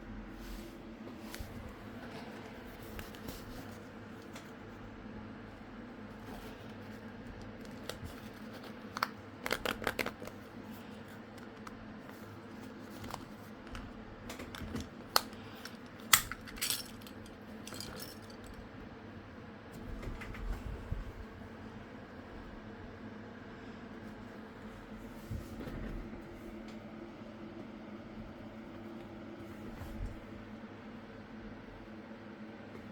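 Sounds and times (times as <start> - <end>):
steady low hum: 0.0 - 32.9
packaging clicks and crinkles: 7.4 - 11.8.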